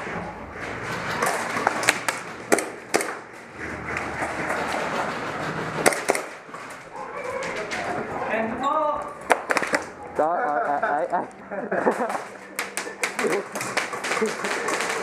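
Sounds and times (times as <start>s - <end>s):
steady rustling noise: 0.0s - 15.0s
airsoft gun shots: 5.8s - 6.4s.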